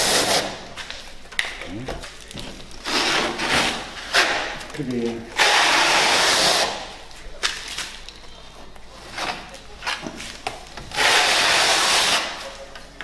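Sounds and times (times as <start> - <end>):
trowel scraping adhesive on tile: 2.8 - 4.7, 5.3 - 7.0, 10.8 - 12.5.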